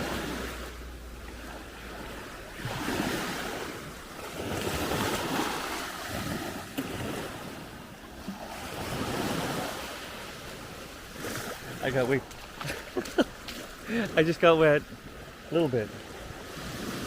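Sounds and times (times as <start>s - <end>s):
small waves washing ashore: 0.0s - 17.0s.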